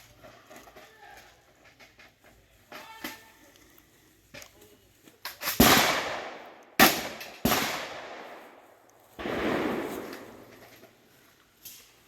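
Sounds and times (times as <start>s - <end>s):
shotgun shots with echo: 5.6s - 8.4s, 9.2s - 10.6s.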